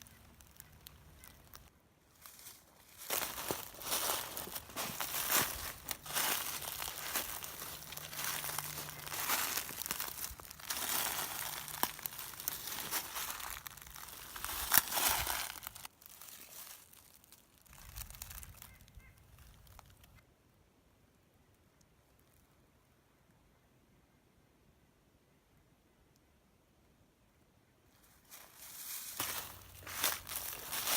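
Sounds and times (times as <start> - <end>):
footsteps crunching dry leaves: 0.0 - 18.7, 28.3 - 30.9.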